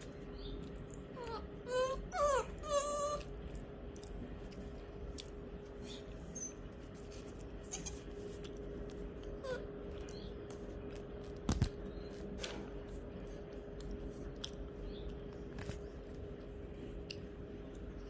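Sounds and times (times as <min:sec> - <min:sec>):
puppy whimpering: 0:01.2 - 0:03.3, 0:05.9 - 0:06.6, 0:07.7 - 0:08.1, 0:09.4 - 0:09.7.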